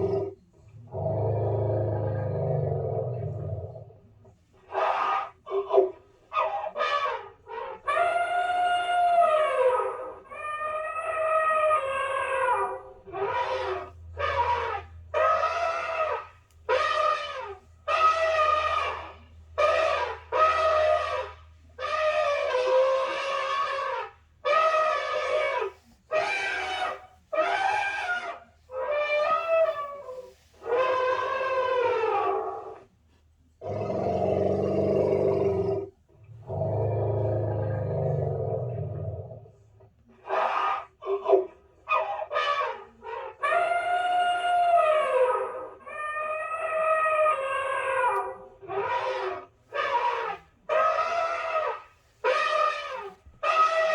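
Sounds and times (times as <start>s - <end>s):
mammoth trumpeting calls: 13.2s - 32.4s, 48.8s - 53.9s.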